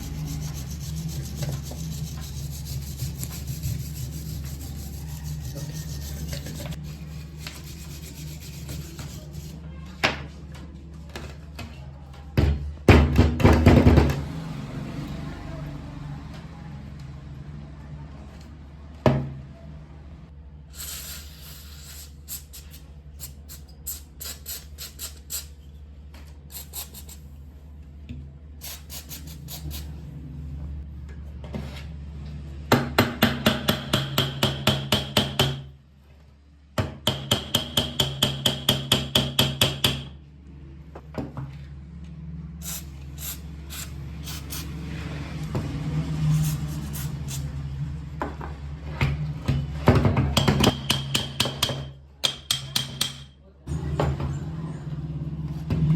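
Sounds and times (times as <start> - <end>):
tapping and scraping on metal: 50.2 - 53.4.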